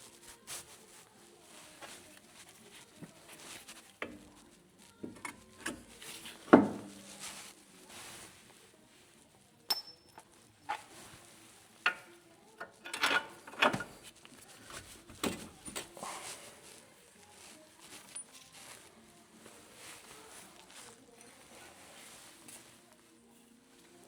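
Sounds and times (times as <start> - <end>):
quiet shuffling: 0.0 - 24.0
metal parts clinking: 12.6 - 14.0.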